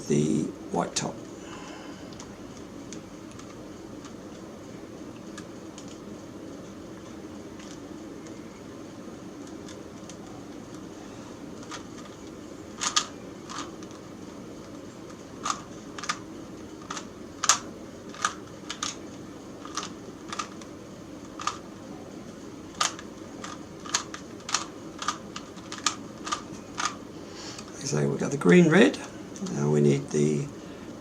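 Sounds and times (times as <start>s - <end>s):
steady low hum: 0.0s - 31.0s
plastic puzzle cube clicking: 12.8s - 14.0s, 15.4s - 16.2s, 16.8s - 19.0s, 19.6s - 20.7s, 21.3s - 21.6s, 22.7s - 27.0s.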